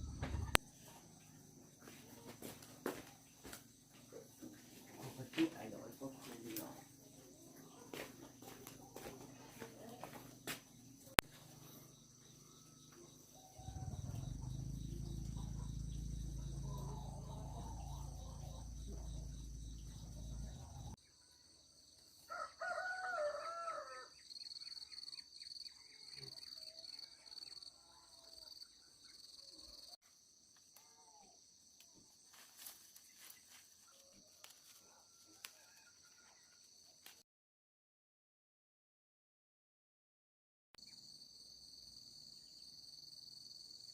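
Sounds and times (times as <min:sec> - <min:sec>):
low rumble: 0:00.0 - 0:00.6, 0:13.6 - 0:21.0
high insect drone: 0:01.0 - 0:21.0
rooster calling: 0:22.3 - 0:24.1.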